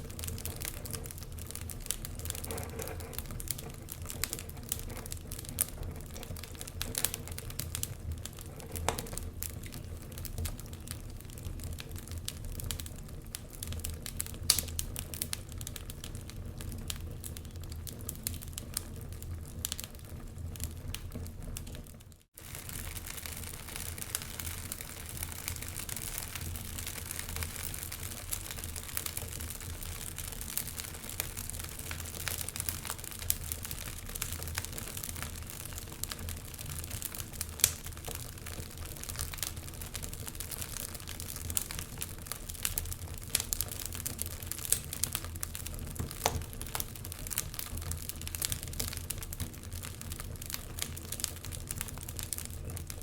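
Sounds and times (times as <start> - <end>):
fire pops and snaps: 0.0 - 53.0
wood fire crackling: 0.0 - 53.0.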